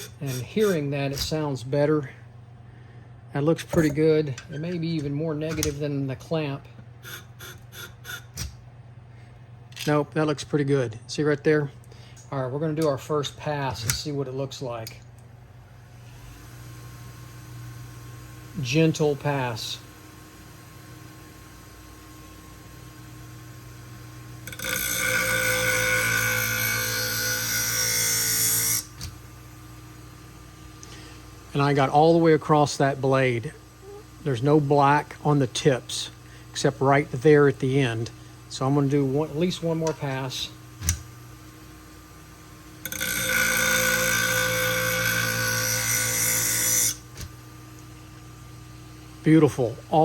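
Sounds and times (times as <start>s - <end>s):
blade grinding on abrasive wheel: 0.0s - 1.4s, 7.0s - 8.4s, 24.5s - 28.9s, 42.8s - 47.0s.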